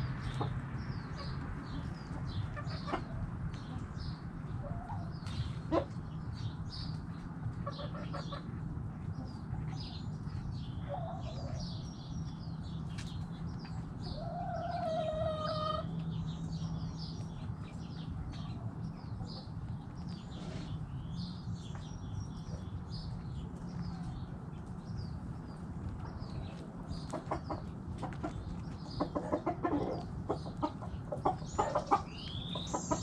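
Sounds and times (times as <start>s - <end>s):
chickens clucking: 0.0s - 33.0s
chicken drawn-out call: 14.1s - 16.0s.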